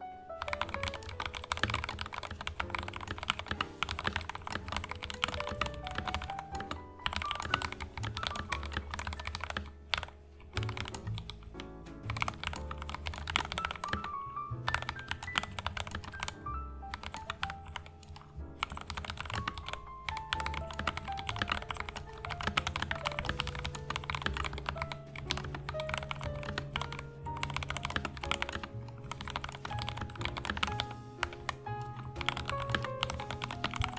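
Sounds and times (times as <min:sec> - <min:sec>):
background music: 0:00.0 - 0:33.9
mechanical keyboard typing: 0:00.3 - 0:33.9.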